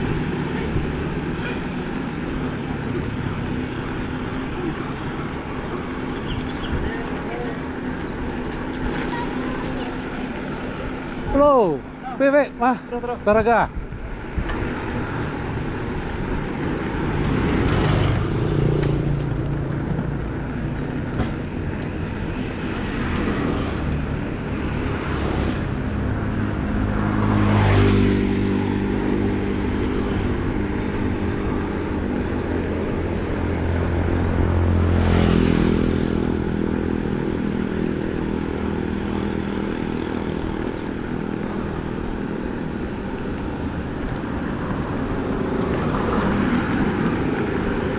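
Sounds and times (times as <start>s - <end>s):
motor vehicles passing: 0.0s - 47.9s
wind: 0.0s - 47.9s
bicycle tyres rolling on road: 13.8s - 25.6s.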